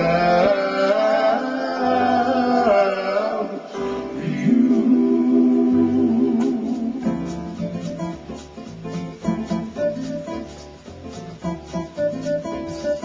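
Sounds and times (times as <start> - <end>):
man singing: 0.0 - 7.2
guitar: 0.0 - 13.0.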